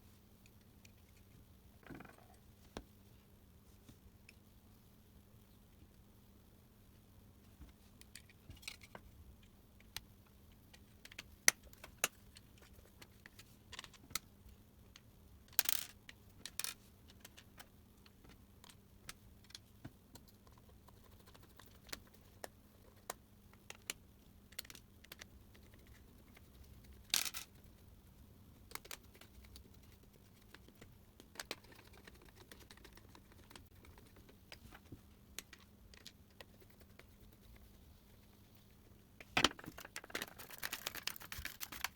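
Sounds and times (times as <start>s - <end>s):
plastic parts clicking and tapping: 39.2s - 41.9s.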